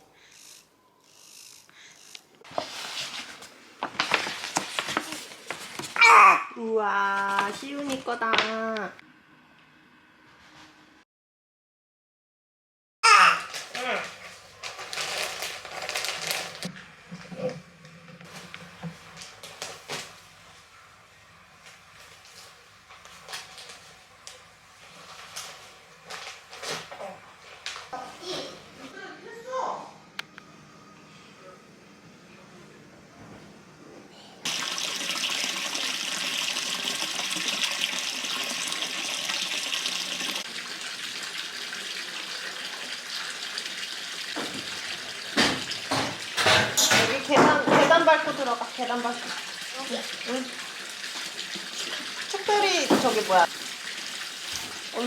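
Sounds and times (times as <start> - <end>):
tap water running into a tub: 34.5 - 55.0.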